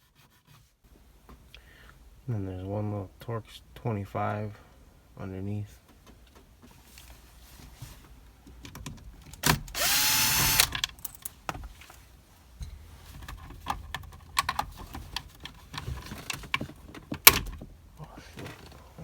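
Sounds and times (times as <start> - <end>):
clicks and knocks of handling: 8.0 - 9.6, 12.6 - 18.8
power drill spinning: 9.7 - 10.7.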